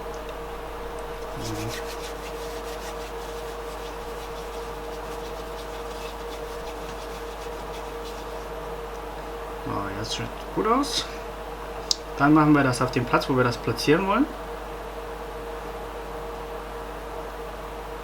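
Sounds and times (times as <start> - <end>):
steady background hum: 0.0 - 18.0
fingers kneading putty: 1.2 - 8.4.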